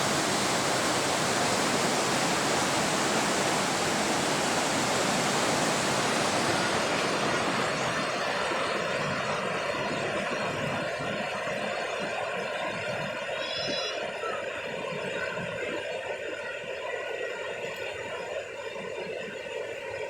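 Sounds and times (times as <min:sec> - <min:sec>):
floodwater rushing: 0:00.0 - 0:13.2.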